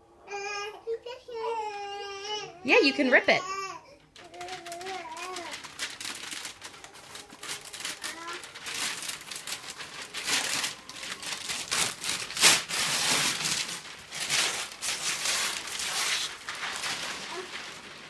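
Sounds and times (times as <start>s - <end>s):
wrapping paper tearing and crumpling: 2.7s - 18.0s.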